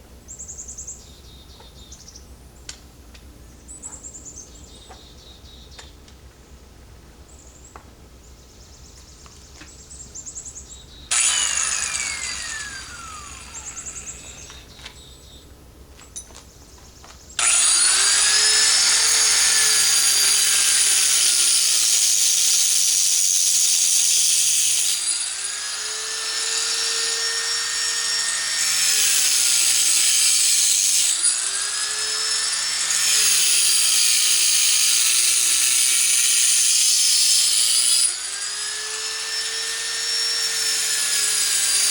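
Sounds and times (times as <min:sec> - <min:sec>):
disc grinder cutting rock: 0:11.1 - 0:14.6, 0:17.4 - 0:41.9.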